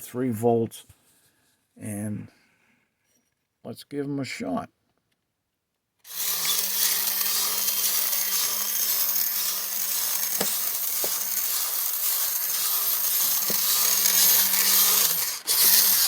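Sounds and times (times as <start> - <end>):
toy motor whirring: 6.0 - 16.0.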